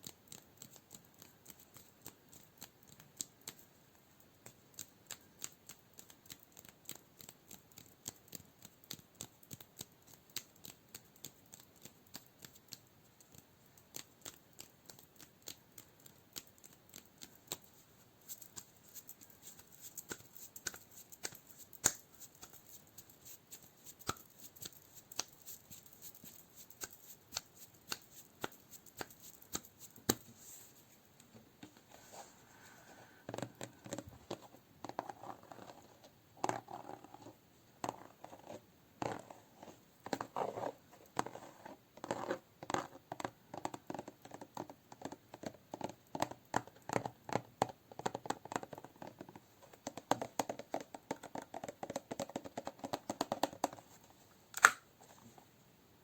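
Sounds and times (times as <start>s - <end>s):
finger clicks and taps: 4.4s - 30.3s, 42.6s - 53.8s.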